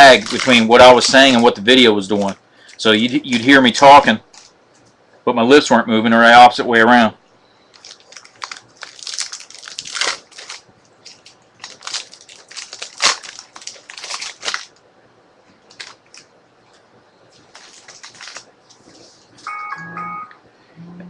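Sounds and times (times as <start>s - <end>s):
card packaging crinkling and tearing: 0.0s - 4.6s, 7.7s - 14.8s, 15.7s - 16.3s, 17.4s - 18.5s.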